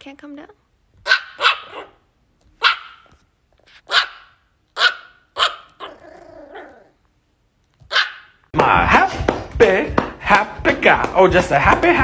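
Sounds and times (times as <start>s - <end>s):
dog barking: 1.0s - 3.1s, 3.8s - 6.0s, 7.9s - 8.4s.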